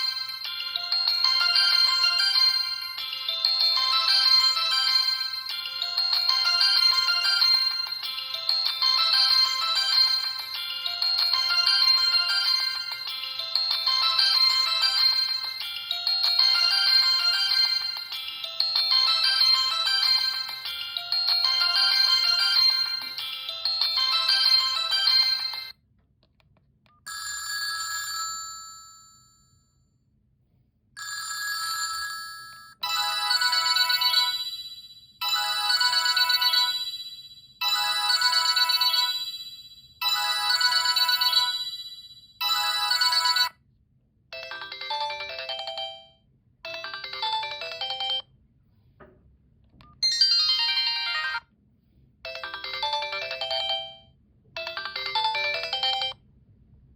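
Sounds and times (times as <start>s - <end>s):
electronic ringtone melody: 0.0s - 25.7s, 32.8s - 43.6s, 44.4s - 48.3s, 50.0s - 51.5s, 52.3s - 56.2s
phone ringing tones: 37.6s - 39.2s, 40.0s - 41.6s, 42.4s - 43.6s, 44.4s - 48.3s, 50.0s - 51.5s, 52.3s - 56.2s.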